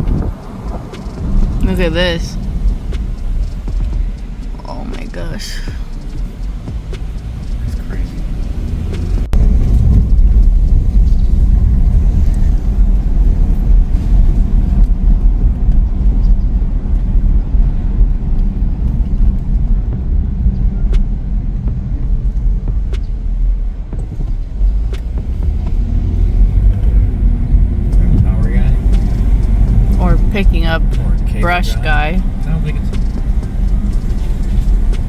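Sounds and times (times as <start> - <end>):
road and engine rumble: 0.0 - 35.0.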